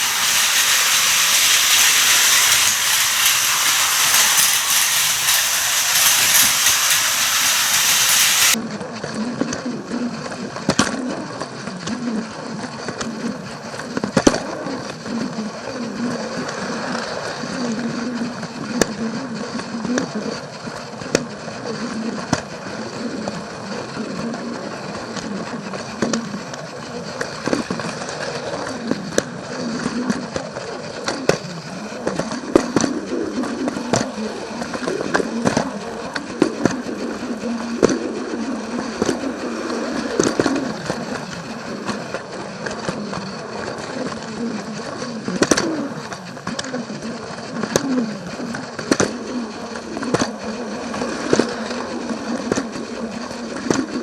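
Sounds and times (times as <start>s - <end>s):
toy train rolling rattle: 0.0s - 8.6s, 32.0s - 54.0s
wheels clicking over rail joints: 0.0s - 8.6s.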